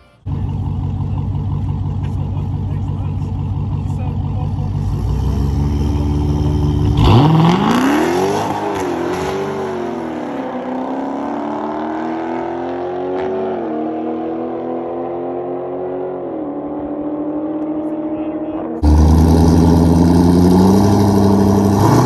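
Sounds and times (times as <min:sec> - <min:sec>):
car engine revving and accelerating: 0:04.6 - 0:22.0.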